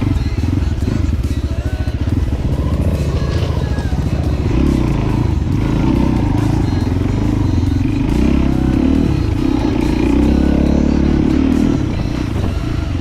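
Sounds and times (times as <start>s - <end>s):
motorcycle engine revving: 0.0s - 13.0s.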